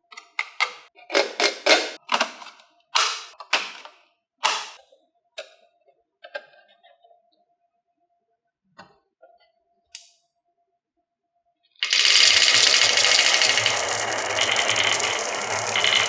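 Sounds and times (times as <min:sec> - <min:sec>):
marbles clacking on wooden run: 0:11.8 - 0:16.0.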